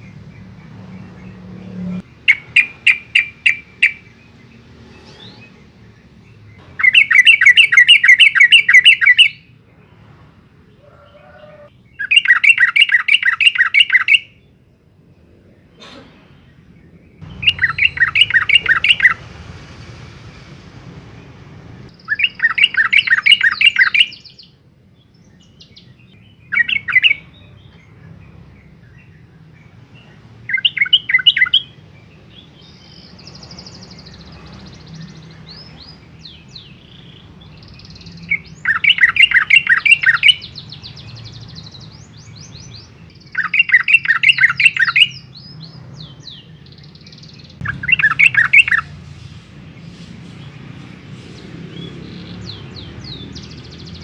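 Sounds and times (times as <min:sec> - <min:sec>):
high bird twittering: 0:00.0 - 0:09.5, 0:10.7 - 0:14.5, 0:17.2 - 0:19.5, 0:21.9 - 0:24.5, 0:25.2 - 0:28.0, 0:30.0 - 0:54.0
bird singing bubbly phrases: 0:17.2 - 0:19.2, 0:21.9 - 0:24.4, 0:36.2 - 0:49.0.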